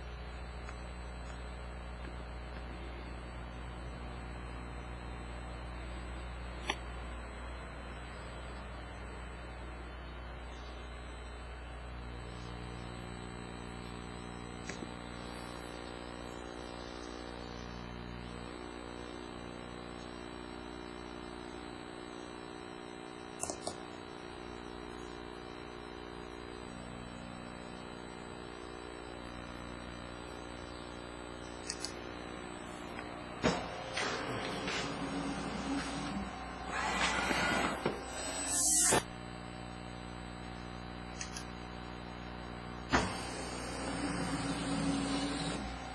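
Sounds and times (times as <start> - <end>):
brief clicks: 31.5 - 32.0
engraving machine motors whirring: 33.4 - 39.1, 42.9 - 45.9.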